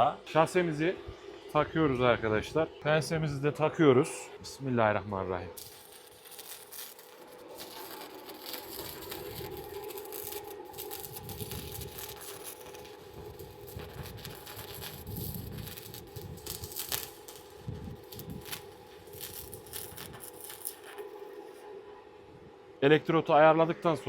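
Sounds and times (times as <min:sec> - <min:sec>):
steady hum: 0:00.0 - 0:24.0
welding arc crackling: 0:05.6 - 0:21.6.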